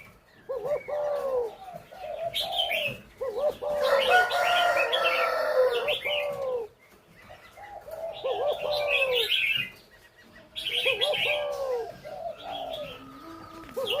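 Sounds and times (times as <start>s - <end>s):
doves cooing: 0.0s - 14.0s
small birds chirping: 0.0s - 14.0s.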